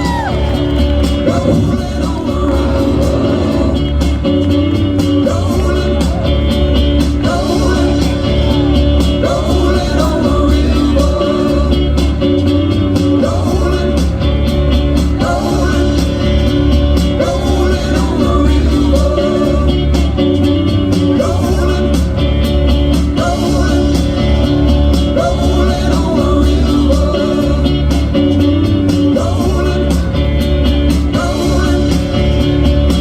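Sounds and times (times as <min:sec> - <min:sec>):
heavy bass pounding: 0:00.0 - 0:07.0
nu-metal band playing live: 0:00.0 - 0:33.0.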